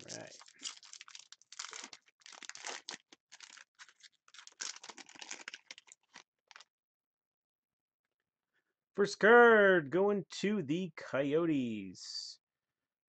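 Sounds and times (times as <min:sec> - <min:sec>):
wrapper tearing and crinkling: 0:00.0 - 0:06.7.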